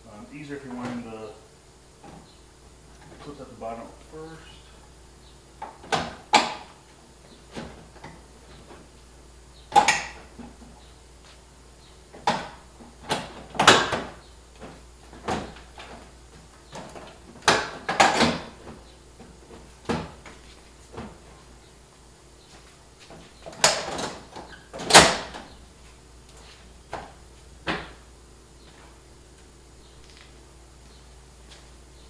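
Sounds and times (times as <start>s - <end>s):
plastic grille knocks and clunks: 12.1s - 21.4s.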